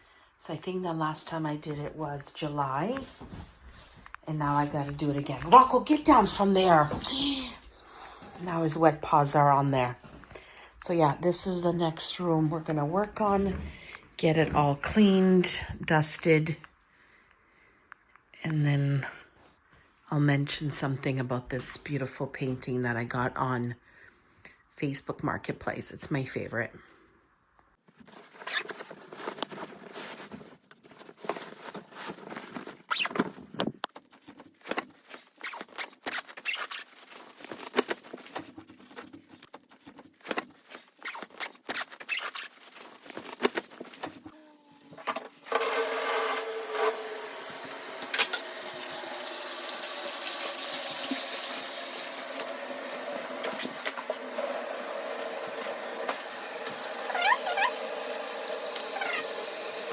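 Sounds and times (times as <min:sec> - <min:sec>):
water running into bathtub: 0:45.5 - 0:59.9.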